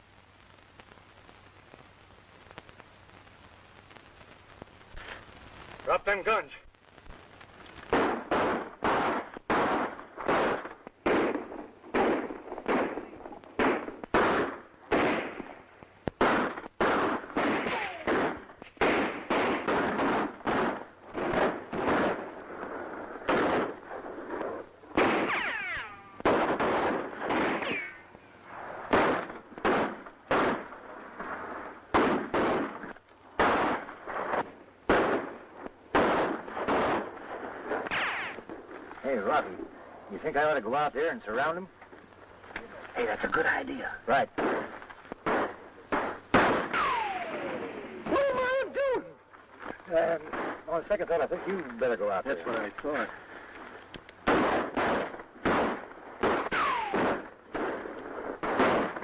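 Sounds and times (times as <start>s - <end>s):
gunshots with ringing echo: 7.9s - 15.5s, 16.2s - 22.3s, 23.2s - 23.9s, 25.0s - 28.0s, 44.4s - 48.0s, 54.3s - 57.8s.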